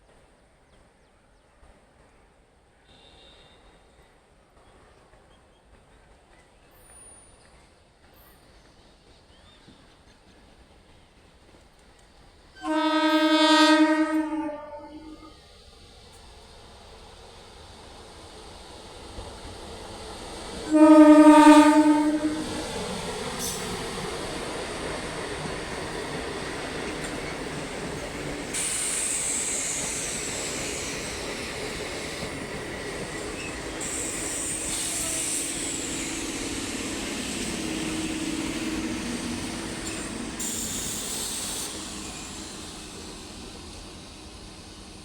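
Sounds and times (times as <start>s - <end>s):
train wheels rumbling on rail: 0.0s - 45.0s
high hiss: 22.1s - 45.0s.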